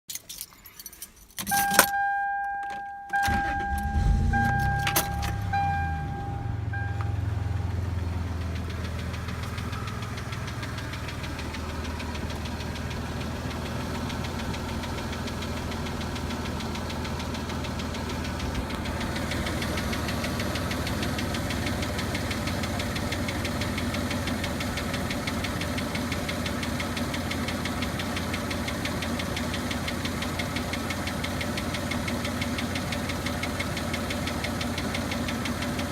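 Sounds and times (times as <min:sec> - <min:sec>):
dashboard warning chime: 0:01.4 - 0:08.6
engine cranking and starting: 0:03.1 - 0:35.9
engine revving: 0:03.2 - 0:26.6
engine idling with knock: 0:03.9 - 0:35.9.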